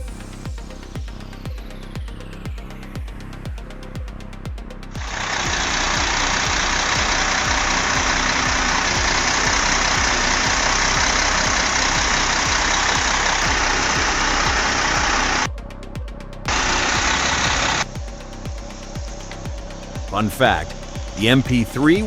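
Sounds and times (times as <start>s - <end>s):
steady low beat: 0.0s - 22.0s
loud engine running: 5.0s - 15.5s, 16.5s - 18.2s.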